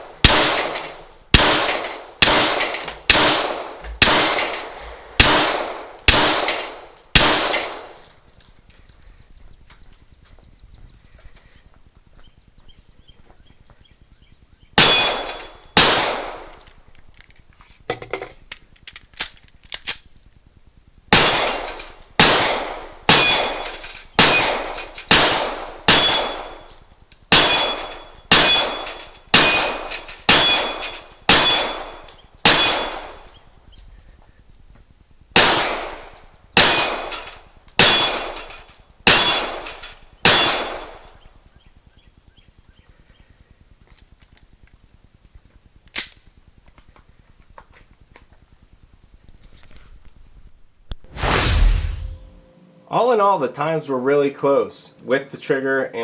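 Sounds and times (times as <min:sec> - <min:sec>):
pistol shots: 0:00.0 - 0:08.0, 0:14.8 - 0:16.6, 0:21.1 - 0:26.7, 0:27.3 - 0:33.4, 0:35.4 - 0:41.2
steel targets ringing: 0:06.1 - 0:07.9, 0:23.1 - 0:33.4, 0:36.6 - 0:41.2.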